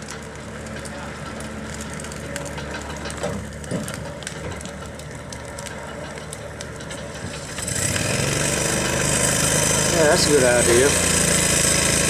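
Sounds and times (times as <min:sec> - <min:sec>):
engine running: 0:00.0 - 0:12.0
sharp crackles: 0:00.0 - 0:12.0
louder engine: 0:07.5 - 0:12.0.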